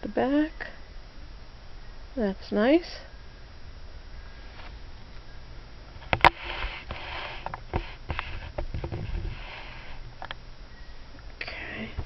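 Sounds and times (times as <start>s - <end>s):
soft breathy sniff: 6.4s - 8.5s, 9.3s - 10.0s.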